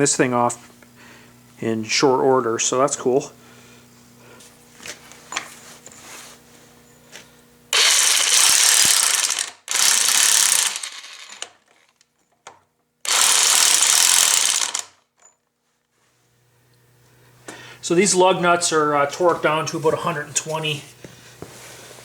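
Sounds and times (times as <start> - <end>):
electric impact wrench hammering: 7.7 - 12.0, 13.0 - 15.1.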